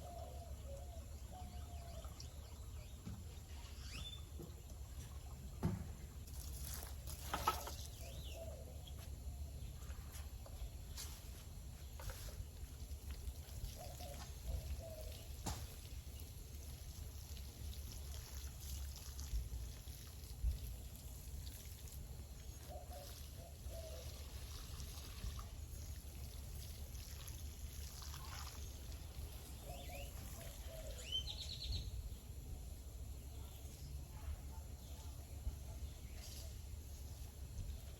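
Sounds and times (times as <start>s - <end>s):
bird chirping: 0.0s - 5.7s, 28.6s - 32.4s
liquid trickling onto soil: 4.7s - 8.3s, 12.1s - 31.0s.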